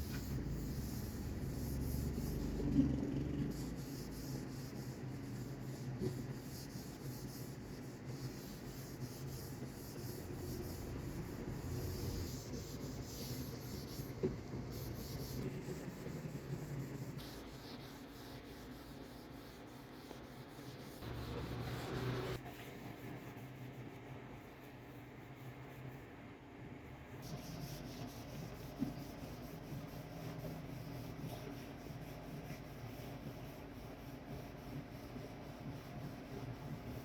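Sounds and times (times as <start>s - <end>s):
scratchy rubbing on wood: 0.0s - 19.6s.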